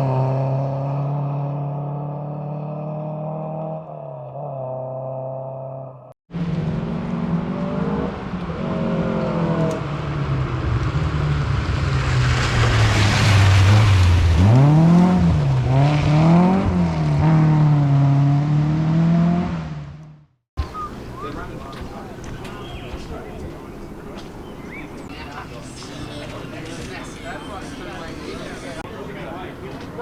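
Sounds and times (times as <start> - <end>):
rally car engine revving: 0.0 - 20.3.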